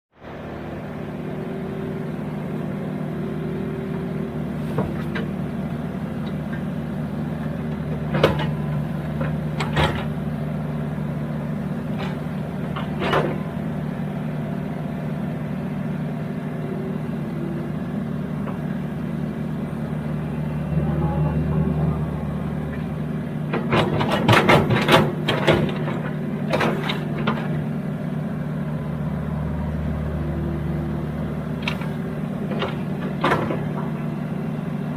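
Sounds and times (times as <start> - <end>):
excavator engine running: 0.2 - 34.9
machine knocks and clanks: 23.5 - 27.6.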